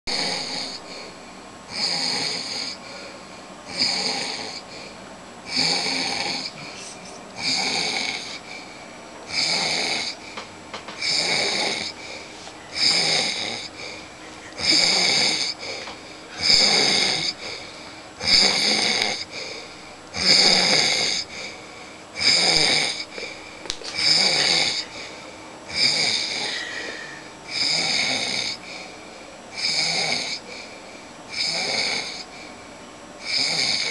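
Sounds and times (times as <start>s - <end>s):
man snoring loudly: 0.1s - 1.1s, 1.7s - 2.8s, 3.7s - 4.7s, 5.5s - 6.7s, 7.4s - 8.6s, 9.3s - 10.2s, 11.0s - 14.0s, 14.6s - 15.8s, 16.4s - 21.6s, 22.2s - 23.3s, 24.0s - 25.1s, 25.7s - 28.8s, 29.6s - 30.7s, 31.3s - 32.3s, 33.2s - 33.9s.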